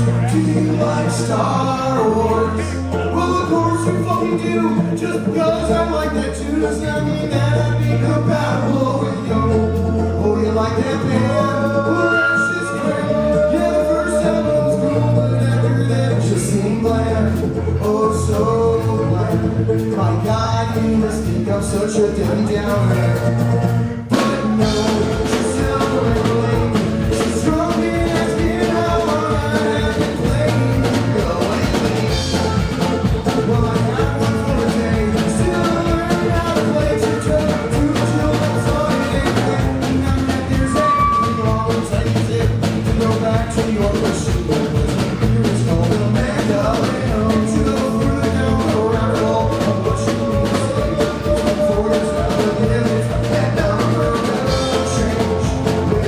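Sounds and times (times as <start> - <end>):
drum kit beating: 0.0 - 56.0
live rock band playing: 0.0 - 56.0
person singing: 0.0 - 56.0.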